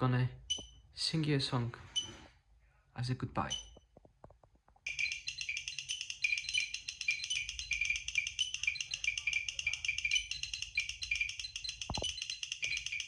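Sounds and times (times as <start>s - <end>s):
geiger counter clicking rapidly: 4.9s - 13.0s.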